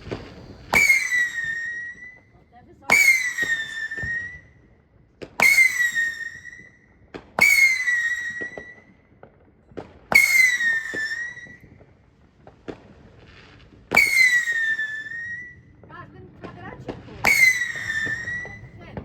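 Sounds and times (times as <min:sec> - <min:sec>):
firework whistles: 0:00.0 - 0:02.3, 0:02.9 - 0:04.6, 0:05.4 - 0:09.0, 0:10.1 - 0:11.9, 0:13.4 - 0:15.7, 0:17.2 - 0:19.0
small firework pops: 0:00.0 - 0:19.0.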